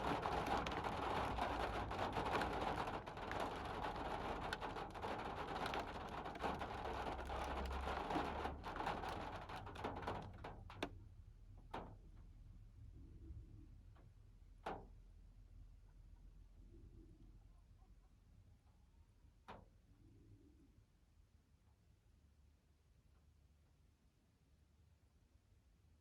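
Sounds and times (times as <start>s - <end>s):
steady rain falling: 0.0s - 10.6s
raindrops ticking on hard surface: 0.0s - 10.9s.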